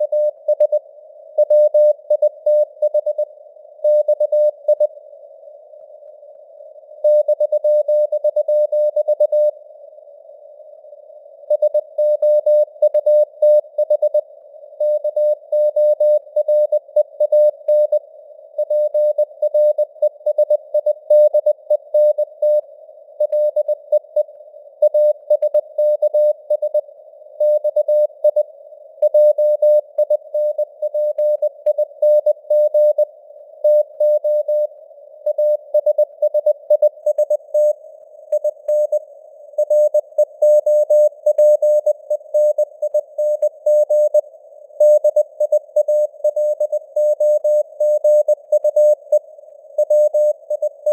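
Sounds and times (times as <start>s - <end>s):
soft radio noise hiss: 4.6s - 7.0s, 9.5s - 11.6s, 17.6s - 18.6s, 22.6s - 24.8s, 28.1s - 29.0s, 33.0s - 35.8s.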